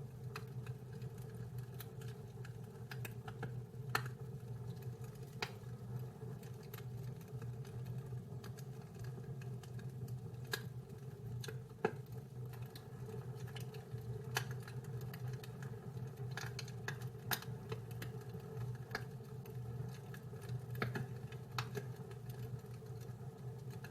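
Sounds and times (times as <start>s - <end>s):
low fire rumble: 0.0s - 23.9s
wood fire crackling: 0.0s - 23.9s.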